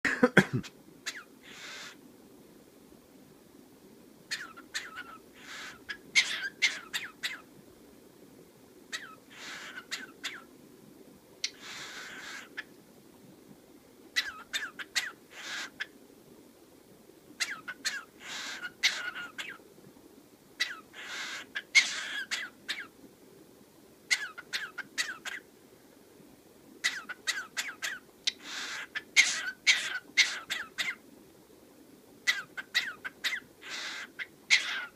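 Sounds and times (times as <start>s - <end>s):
cockatiel hoarse coughing: 0.0s - 1.2s
cockatiel short sharp calls: 1.1s - 2.0s, 4.3s - 7.4s, 11.4s - 12.6s, 14.2s - 15.9s, 17.4s - 19.6s, 20.6s - 22.9s, 26.8s - 31.0s, 32.2s - 34.9s.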